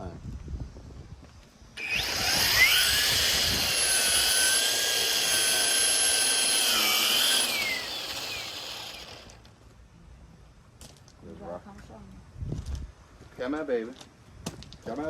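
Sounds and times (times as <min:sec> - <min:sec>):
string trimmer motor whine: 0:01.8 - 0:09.5.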